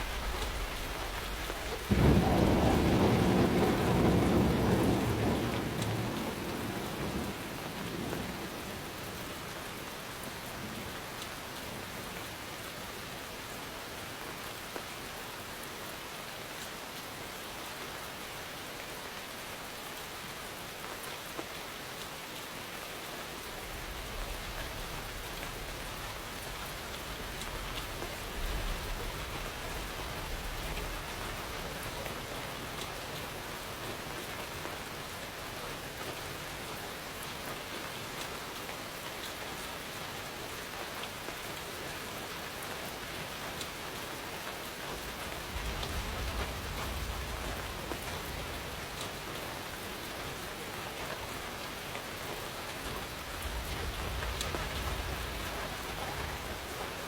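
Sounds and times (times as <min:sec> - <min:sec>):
distant thunder rumble: 0:00.0 - 0:09.6, 0:23.6 - 0:34.1, 0:44.9 - 0:51.0, 0:52.8 - 0:57.0
steady rain falling: 0:00.0 - 0:57.0.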